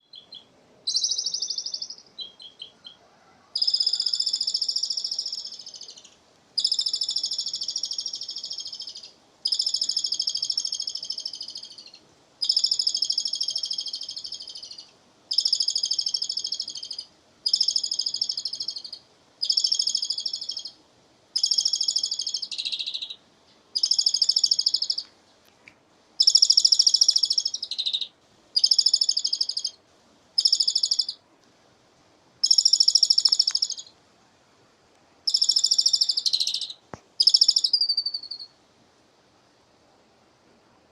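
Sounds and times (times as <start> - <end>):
starling chattering calls: 3.6 - 20.7, 21.4 - 23.2, 23.8 - 25.0, 26.2 - 29.8, 30.4 - 31.2, 32.4 - 33.9, 35.3 - 38.4.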